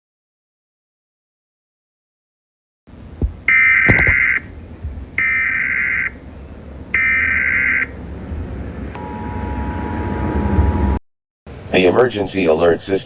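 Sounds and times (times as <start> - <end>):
two-tone attention signal: 9.0 - 10.0.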